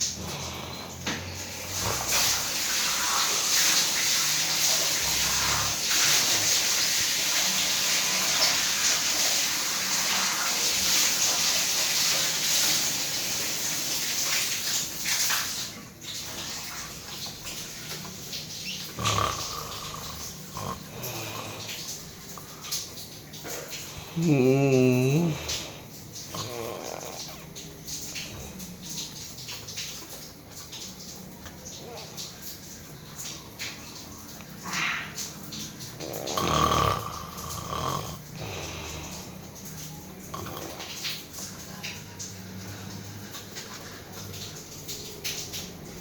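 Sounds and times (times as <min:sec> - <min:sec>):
man snoring loudly: 0:04.9 - 0:06.6, 0:19.0 - 0:21.7, 0:24.1 - 0:27.4, 0:36.0 - 0:39.2, 0:40.3 - 0:40.8.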